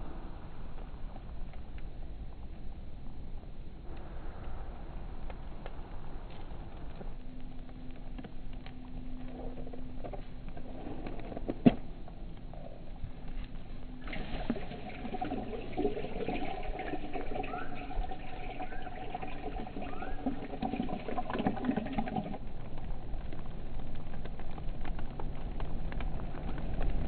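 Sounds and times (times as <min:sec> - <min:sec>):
liquid pouring into container: 0:14.0 - 0:22.5.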